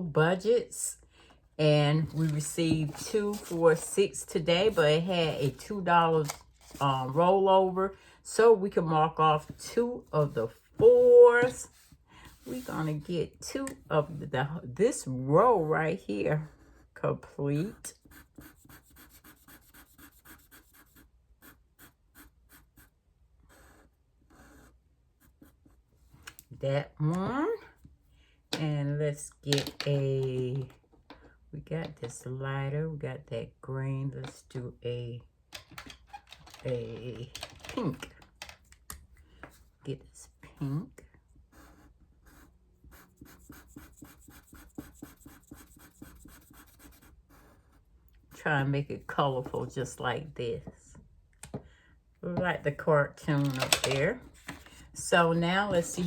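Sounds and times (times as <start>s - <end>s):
marker scratching on paper: 10.2s - 13.0s, 17.6s - 25.8s, 41.5s - 47.8s.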